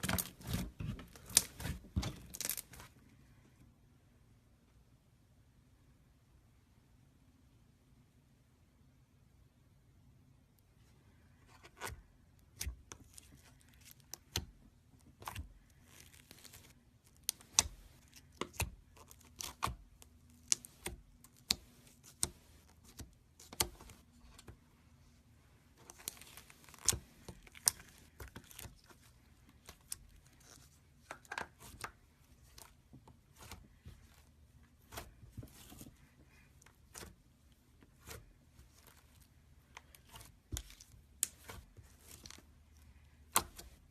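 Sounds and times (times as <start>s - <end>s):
slime squishing: 0.0s - 3.0s, 11.5s - 24.6s, 25.7s - 43.9s.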